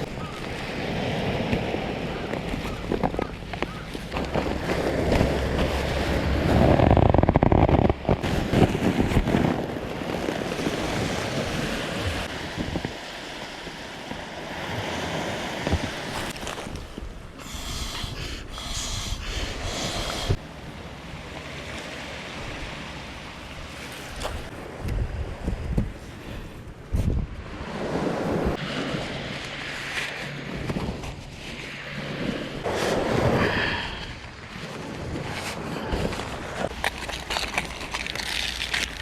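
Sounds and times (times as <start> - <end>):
wind rumble on microphone: 0.0 - 13.3, 24.1 - 37.7
sea waves washing on shore: 0.0 - 26.5.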